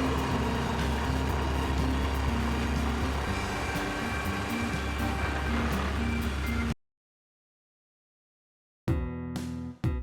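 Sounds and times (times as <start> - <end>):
background music: 0.0 - 6.8, 8.9 - 10.0.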